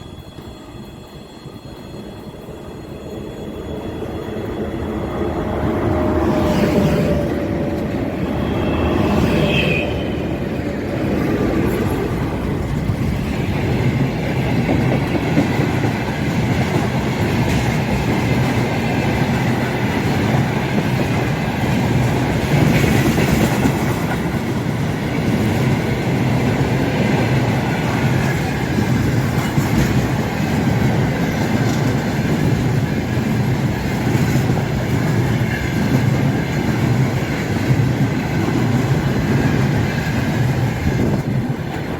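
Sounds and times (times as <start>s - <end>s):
freight train rumbling past: 0.0s - 41.9s
wheels clickety-clack: 11.5s - 41.9s.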